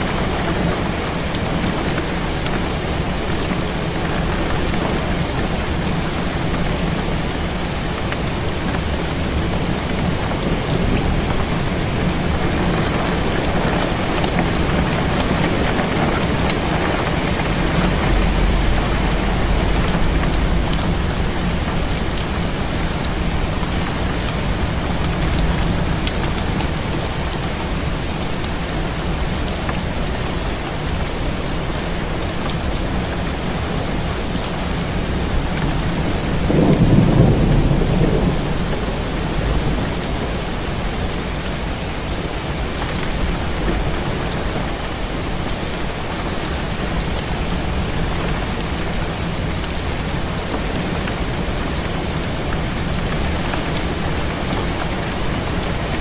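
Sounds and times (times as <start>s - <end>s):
heavy rain on a window: 0.0s - 56.0s
low rumble of thunder: 8.4s - 27.9s, 34.8s - 41.6s.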